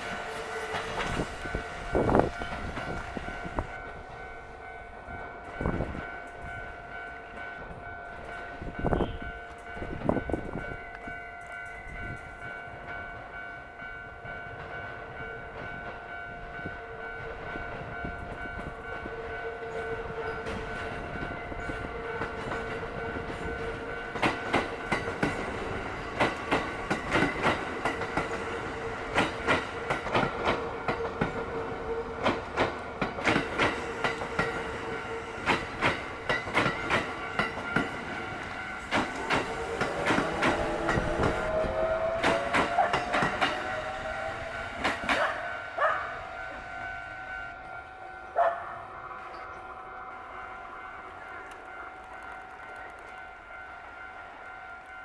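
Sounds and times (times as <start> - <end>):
crossing warning bell: 0.0 - 55.0
train wheels clacking over rail joints: 17.3 - 46.1.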